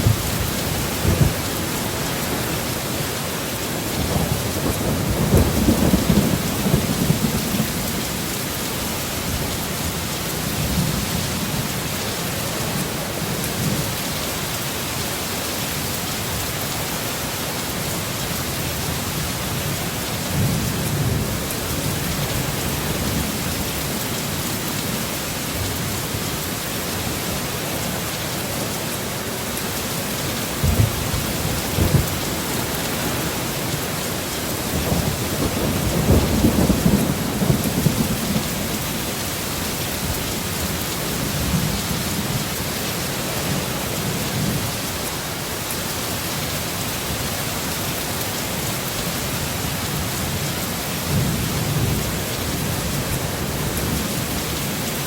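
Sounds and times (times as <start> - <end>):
thunder rumbling: 0.0 - 2.9, 3.9 - 8.4, 30.4 - 39.2
heavy rain hissing: 0.0 - 55.0.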